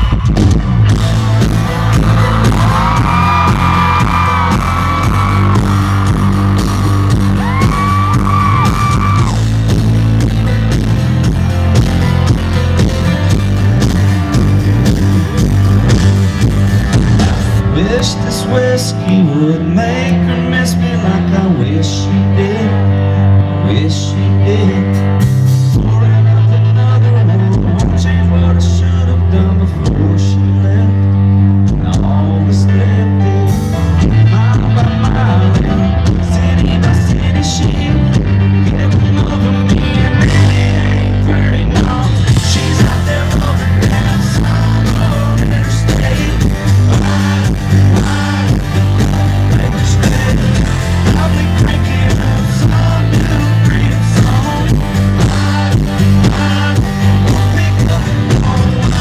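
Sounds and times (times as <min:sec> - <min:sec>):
country band playing: 0:00.0 - 0:59.0.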